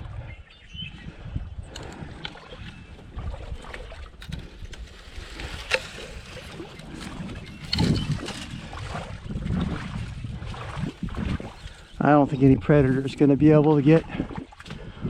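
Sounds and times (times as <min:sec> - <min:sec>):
water sloshing around waders: 0:00.0 - 0:15.0
handling noise: 0:04.2 - 0:08.7.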